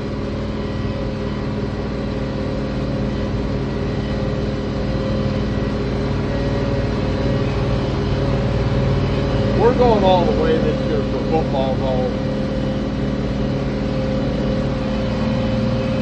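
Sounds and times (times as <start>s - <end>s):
tractor diesel engine droning: 0.0s - 16.0s.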